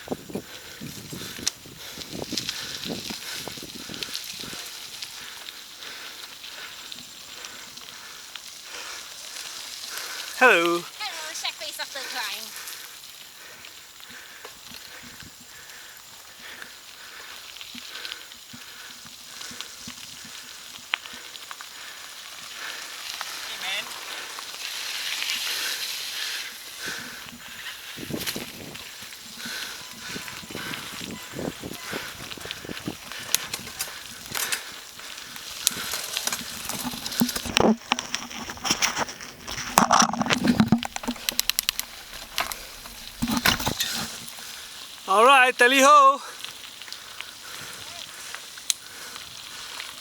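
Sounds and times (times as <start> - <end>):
person breathing heavily: 0.0 - 10.4, 11.9 - 37.6, 40.4 - 45.1, 46.2 - 50.0
bicycle rattling over rough ground: 0.0 - 50.0
crackling hiss: 0.0 - 50.0.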